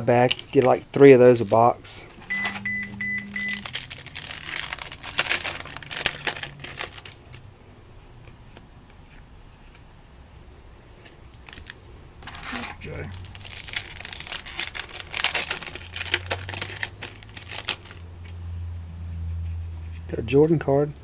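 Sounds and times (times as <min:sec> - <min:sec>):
cards rustling: 0:00.0 - 0:07.4, 0:11.0 - 0:18.4
plastic wrapper crinkling and tearing: 0:03.3 - 0:07.5, 0:11.2 - 0:18.4.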